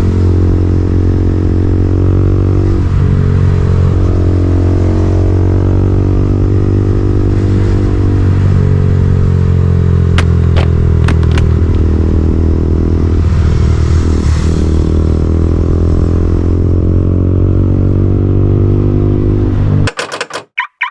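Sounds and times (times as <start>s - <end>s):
motorcycle engine running: 9.7s - 12.7s
sharp clicks: 19.9s - 20.9s.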